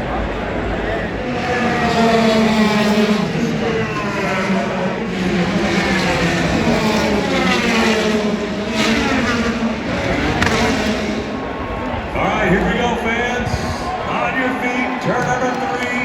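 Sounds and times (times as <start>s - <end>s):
race car engines passing: 0.0s - 16.0s.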